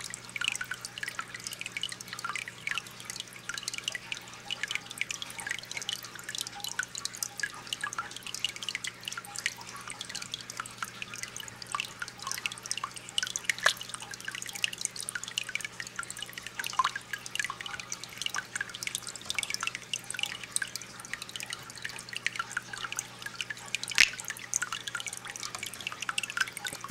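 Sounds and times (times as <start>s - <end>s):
water dripping: 0.0s - 26.9s
fish clicks and squeaks: 13.1s - 14.0s, 23.9s - 25.8s.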